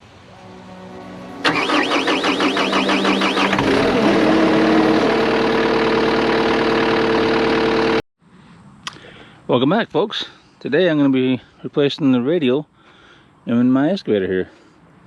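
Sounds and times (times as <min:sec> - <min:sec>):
rising hum: 0:00.0 - 0:08.0
diesel engine running: 0:00.4 - 0:08.0.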